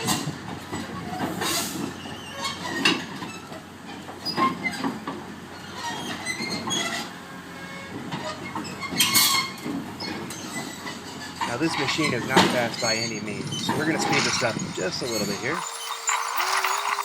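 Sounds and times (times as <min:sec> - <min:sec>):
track links squealing: 0:08.8 - 0:17.0
metallic track clanks: 0:11.4 - 0:17.0
excavator engine running: 0:11.5 - 0:17.0.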